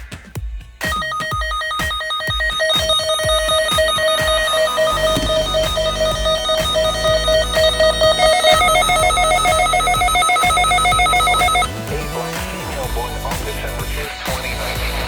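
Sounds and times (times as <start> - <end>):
rapid electronic alert beeping: 0.8 - 12.2.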